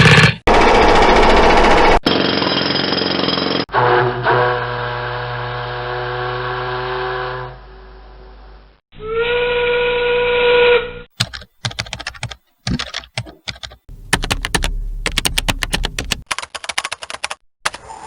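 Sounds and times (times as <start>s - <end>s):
sharp typing-like clicks: 11.2s - 17.4s.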